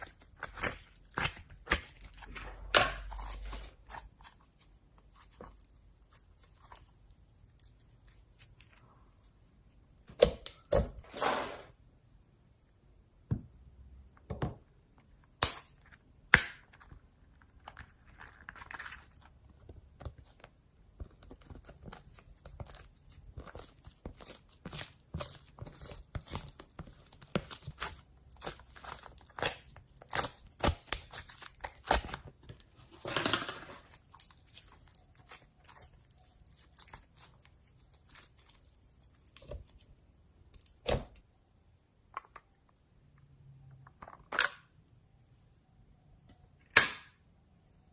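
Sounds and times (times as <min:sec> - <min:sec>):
slime rasping: 0:21.1 - 0:32.3, 0:33.8 - 0:40.1
slime squeezed crackling and popping: 0:21.3 - 0:32.2.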